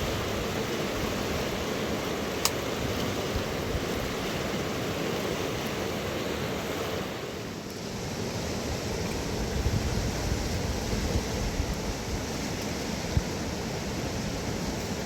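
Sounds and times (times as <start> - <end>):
fast river rushing: 0.0 - 15.0
wind rumble on microphone: 8.3 - 15.0.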